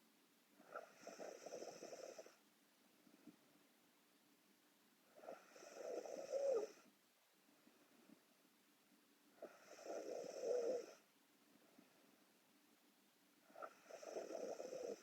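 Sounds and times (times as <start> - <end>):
woman snoring: 0.7 - 2.4, 5.2 - 6.8, 9.4 - 11.0, 13.6 - 15.0.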